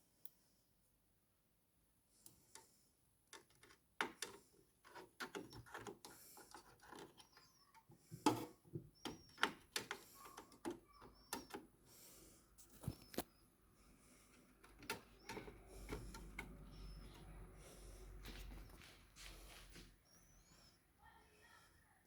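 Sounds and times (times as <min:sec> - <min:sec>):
clicks and taps of computer parts: 0:03.3 - 0:07.4, 0:08.1 - 0:11.7, 0:14.6 - 0:17.3
faint high squeaks: 0:06.6 - 0:11.7.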